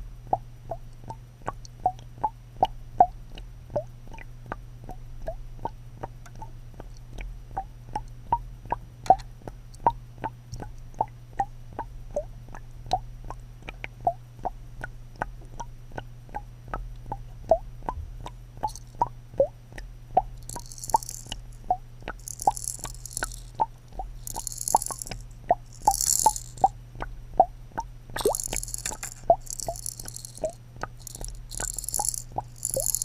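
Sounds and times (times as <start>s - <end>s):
steady low hum: 17.3s - 33.0s
small water plops: 28.2s - 33.0s.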